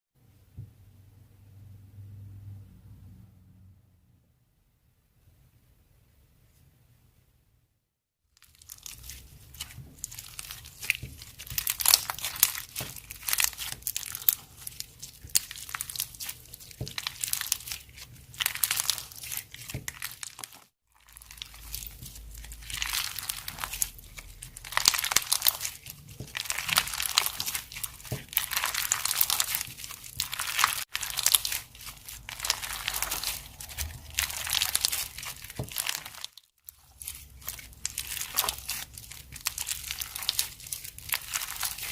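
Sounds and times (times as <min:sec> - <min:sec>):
plastic packaging crinkling: 0:08.4 - 0:41.9
plastic tearing: 0:08.4 - 0:41.9.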